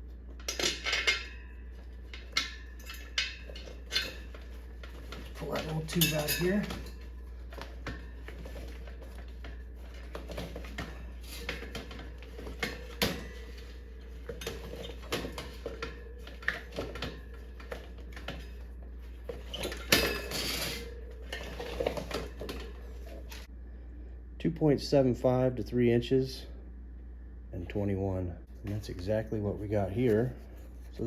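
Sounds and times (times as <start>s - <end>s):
inner tube clinks and rubbing: 0.0s - 23.5s
low steady hum: 0.0s - 31.0s.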